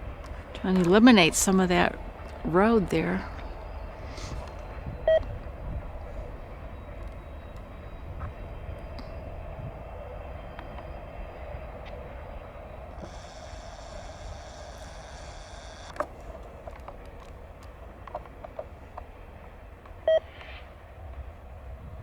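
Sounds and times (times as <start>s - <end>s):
high whine: 0.0s - 17.3s
freight train low rumble: 0.0s - 22.0s
click: 7.0s - 8.3s, 13.0s - 19.1s.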